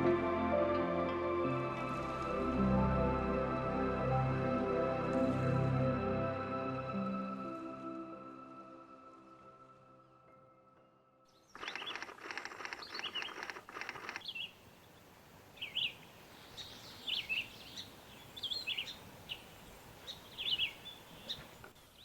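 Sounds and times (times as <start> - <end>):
wild birds chirping: 11.3 - 22.0
faint steady hiss: 13.2 - 22.0.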